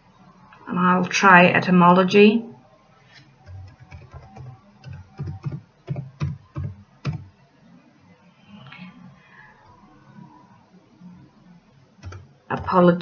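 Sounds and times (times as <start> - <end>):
typing on computer keyboard: 3.4 - 7.3, 12.0 - 12.7.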